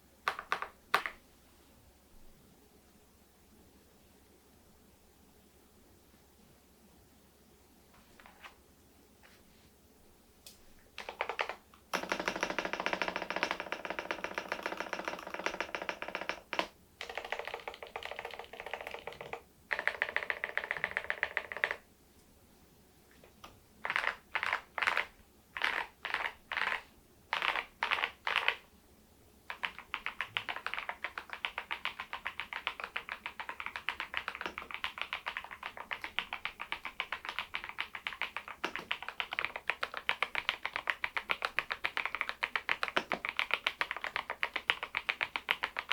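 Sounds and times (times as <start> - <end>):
mechanical keyboard typing: 0.3 - 1.2, 11.0 - 21.8, 23.8 - 28.6, 29.5 - 45.9.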